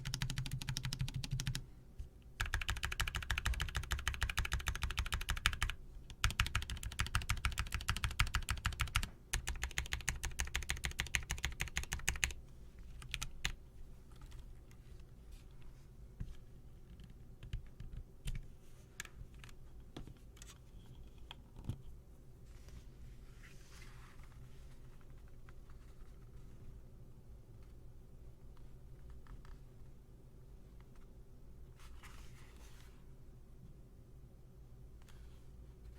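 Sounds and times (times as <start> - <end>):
fast typing on mechanical keyboard: 0.0 - 1.6, 2.4 - 12.4, 13.0 - 13.6.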